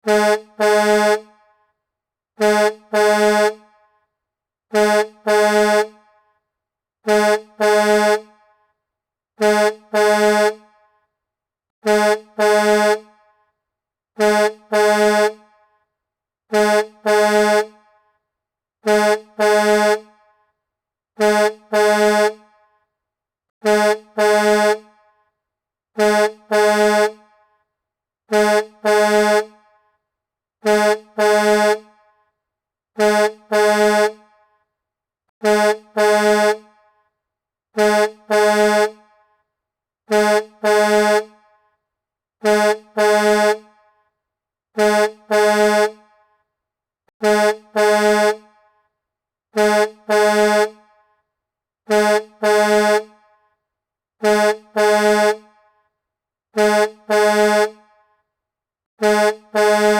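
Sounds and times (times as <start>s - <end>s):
truck horn honks: 0.0s - 1.4s, 2.4s - 3.7s, 4.7s - 6.1s, 7.0s - 8.4s, 9.4s - 10.7s, 11.8s - 13.1s, 14.2s - 15.5s, 16.5s - 17.9s, 18.8s - 20.2s, 21.2s - 22.6s, 23.6s - 25.0s, 26.0s - 27.3s, 28.3s - 29.6s, 30.6s - 32.0s, 33.0s - 34.3s, 35.4s - 36.8s, 37.8s - 39.1s, 40.1s - 41.5s, 42.4s - 43.8s, 44.8s - 46.1s, 47.2s - 48.6s, 49.5s - 50.8s, 51.9s - 53.2s, 54.2s - 55.6s, 56.6s - 57.8s, 59.0s - 59.9s.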